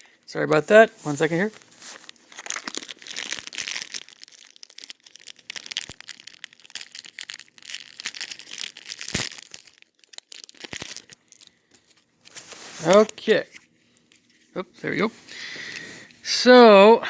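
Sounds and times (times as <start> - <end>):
plastic wrapper crinkling: 1.0 - 14.5.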